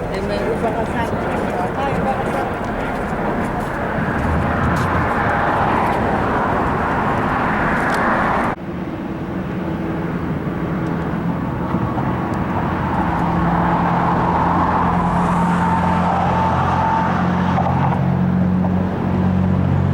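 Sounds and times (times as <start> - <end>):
car road and engine noise: 0.0 - 19.9.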